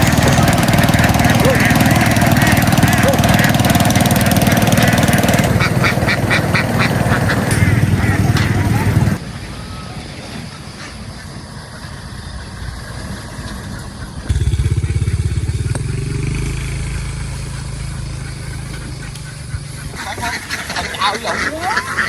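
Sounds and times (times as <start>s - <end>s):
vehicle engine running: 0.0s - 9.2s, 14.3s - 22.0s.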